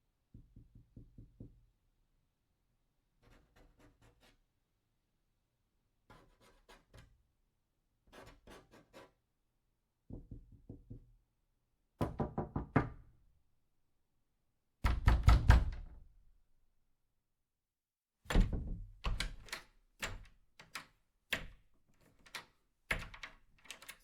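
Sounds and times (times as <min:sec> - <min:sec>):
knocking on a door: 0:00.3 - 0:01.6, 0:10.1 - 0:11.1, 0:12.0 - 0:13.1, 0:14.8 - 0:16.0, 0:18.3 - 0:19.5.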